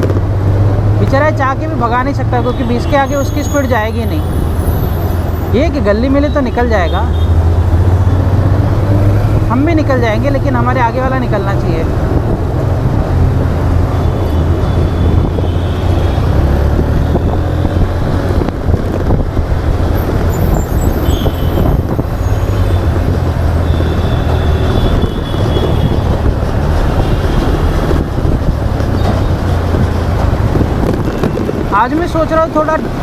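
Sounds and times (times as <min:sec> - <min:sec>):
wind rumble on microphone: 0:07.4 - 0:33.0.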